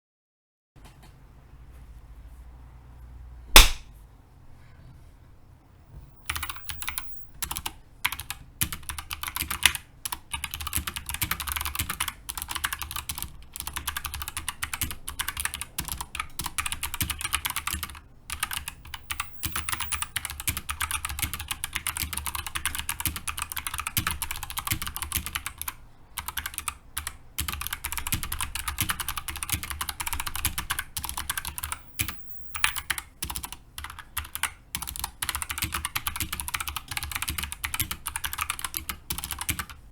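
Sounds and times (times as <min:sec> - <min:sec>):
mechanical keyboard typing: 0:06.3 - 0:39.8.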